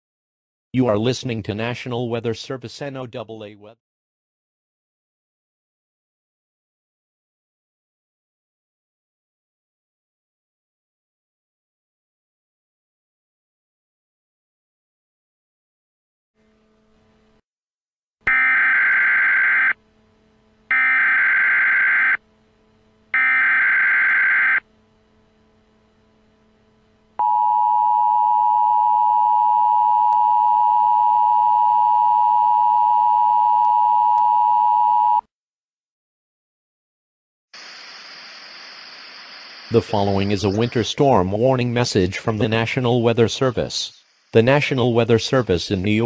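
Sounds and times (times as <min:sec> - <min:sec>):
steady attention tone: 0:18.3 - 0:35.0, 0:39.7 - 0:43.2
digital data tones: 0:39.7 - 0:41.1.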